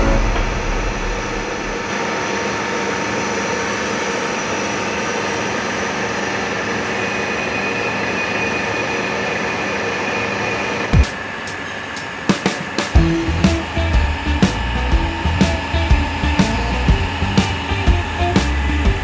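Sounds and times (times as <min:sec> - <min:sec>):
drilling machine whirring: 0:12.8 - 0:19.0.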